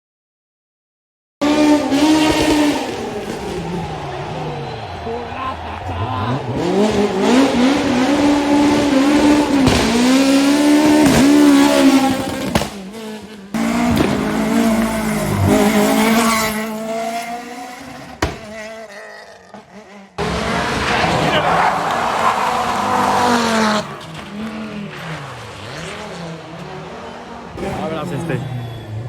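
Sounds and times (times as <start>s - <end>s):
rally car engines at full throttle: 1.4s - 29.0s
car engine steady note: 20.2s - 29.0s
tyre squeal: 27.0s - 29.0s.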